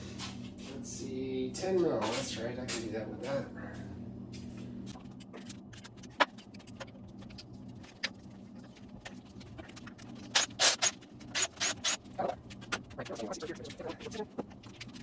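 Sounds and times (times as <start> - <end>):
metal tools and bolts clinking: 9.8 - 12.9.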